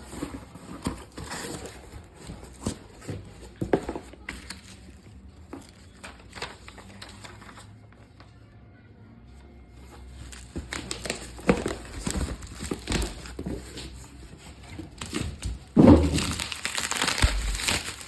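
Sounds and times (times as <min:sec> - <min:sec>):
packaging rustling: 0:00.0 - 0:07.7, 0:10.1 - 0:18.0
packaging taps and knocks: 0:00.2 - 0:04.7, 0:10.3 - 0:14.1.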